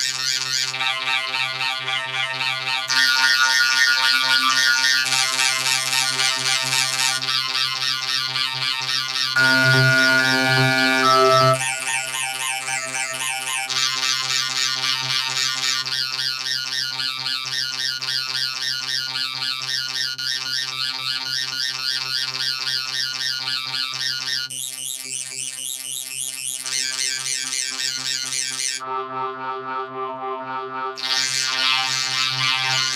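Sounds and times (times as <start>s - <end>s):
pitched-up warbling drone: 9.4s - 13.7s, 28.8s - 32.9s.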